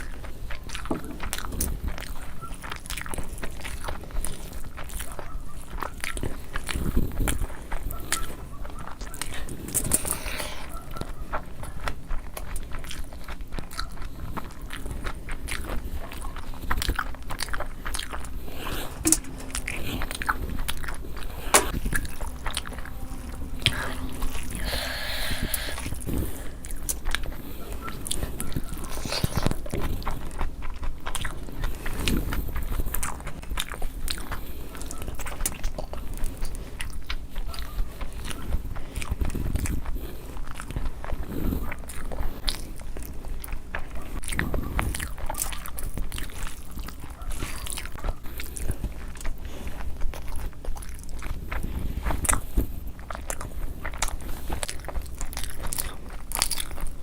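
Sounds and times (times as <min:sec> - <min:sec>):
person chewing food: 0:00.0 - 0:57.0
mouth clicks: 0:04.8 - 0:32.2.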